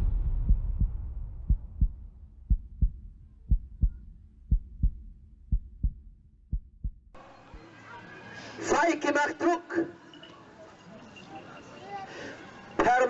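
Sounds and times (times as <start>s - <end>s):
heartbeat thumps: 0.0s - 7.2s
rumble of a boom: 0.0s - 7.2s.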